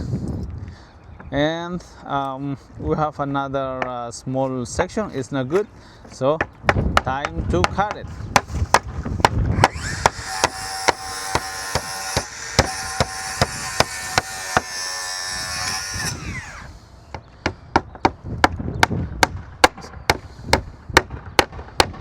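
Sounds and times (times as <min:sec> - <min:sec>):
power saw cutting wood: 0:08.7 - 0:16.9.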